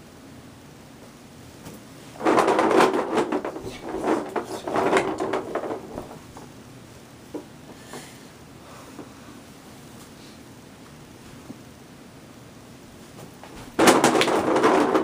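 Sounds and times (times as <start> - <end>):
rattling and clattering: 2.2 - 6.5, 13.7 - 15.0.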